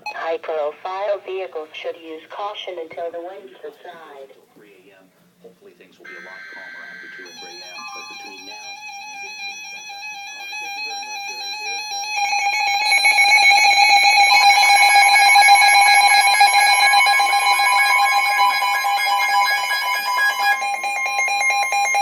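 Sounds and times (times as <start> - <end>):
two-tone electronic alert signal: 6.1 - 22.0.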